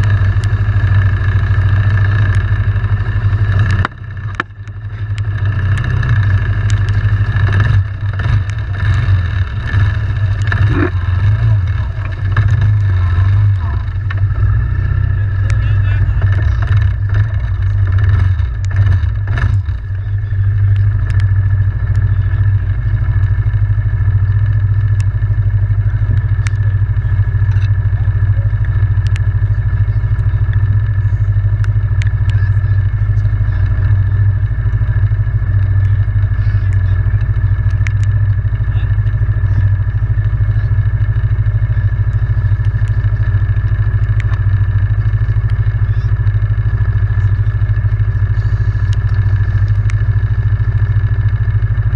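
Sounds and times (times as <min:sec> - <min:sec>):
atv engine running: 0:00.0 - 0:51.9.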